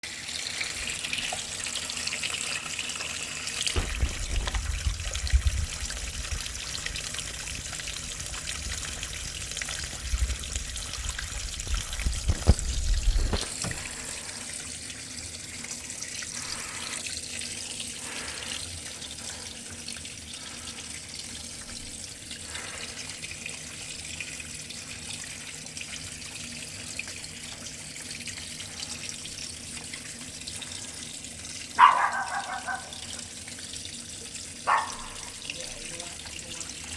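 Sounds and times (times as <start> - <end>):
water running: 0.0 - 36.9
low rumbling knocks: 3.7 - 8.7.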